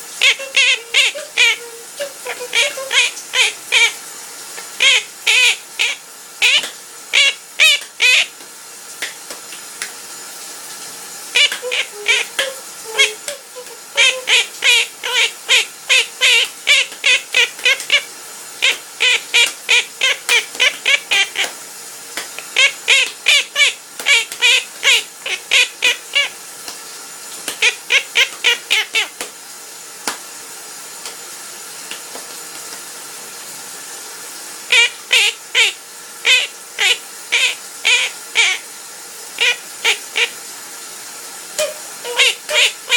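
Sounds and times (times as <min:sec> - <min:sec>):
parrot chirping: 0:00.2 - 0:04.0, 0:04.8 - 0:08.3, 0:11.4 - 0:21.4, 0:22.4 - 0:26.3, 0:27.6 - 0:29.1, 0:34.7 - 0:38.6, 0:39.4 - 0:40.3, 0:41.6 - 0:42.9.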